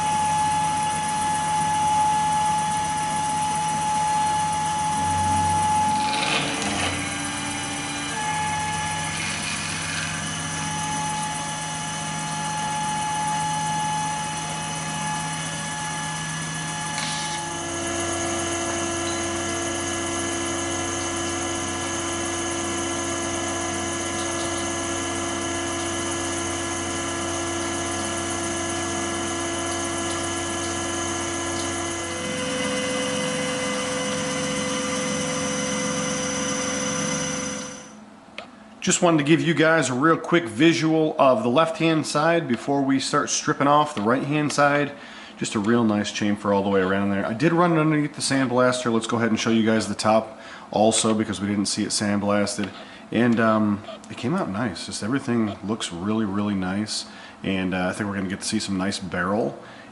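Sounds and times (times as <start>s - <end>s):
milling machine spindle whine: 0.0s - 38.1s.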